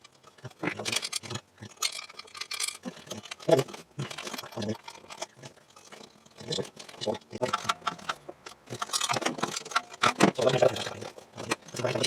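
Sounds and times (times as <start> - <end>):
metal hand tools clicking: 6.4 - 12.0.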